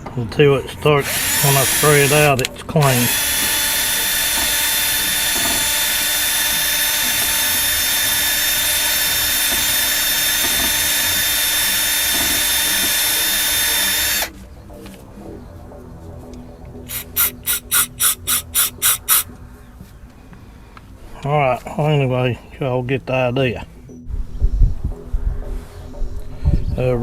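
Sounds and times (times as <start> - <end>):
power drill running: 1.0 - 14.3, 16.9 - 19.3.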